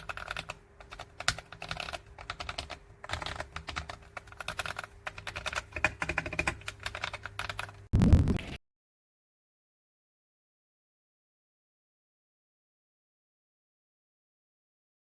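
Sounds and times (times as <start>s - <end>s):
mechanical keyboard typing: 0.0s - 8.4s
short deep burst: 8.0s - 8.6s.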